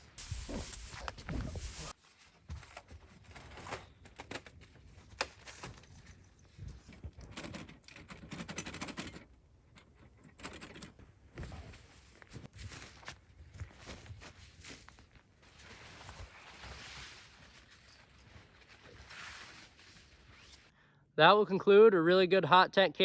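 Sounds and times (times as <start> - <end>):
rustling and crunching of tent gear: 0.0 - 7.4, 11.1 - 20.7.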